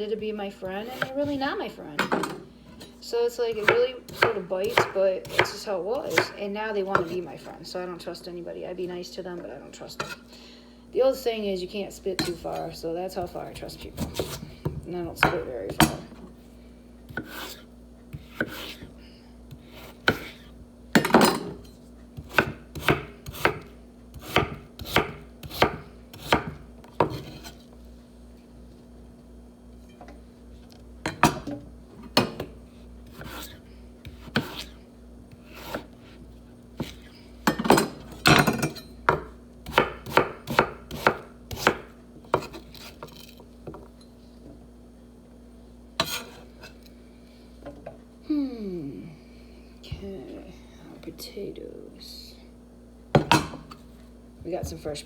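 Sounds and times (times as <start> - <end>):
knife chopping on cutting board: 0.8 - 1.4, 3.5 - 7.2, 13.2 - 16.2, 17.1 - 27.6, 31.0 - 43.8, 46.0 - 46.7.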